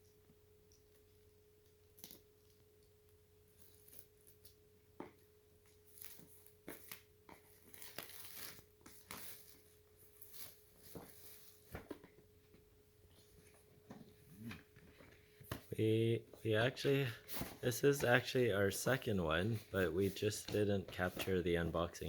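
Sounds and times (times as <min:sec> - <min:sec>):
faint electrical hum: 0:00.0 - 0:22.0
packaging rustling and crinkling: 0:05.7 - 0:12.6, 0:16.4 - 0:22.0.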